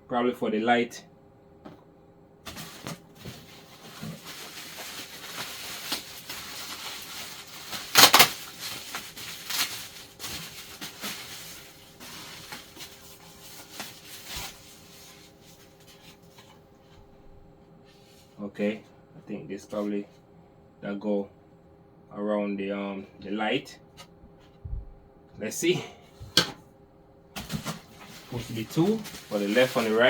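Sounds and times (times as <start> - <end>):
packaging rustling: 2.5 - 16.6, 27.4 - 30.0
loud sharp crackle: 4.6 - 9.8.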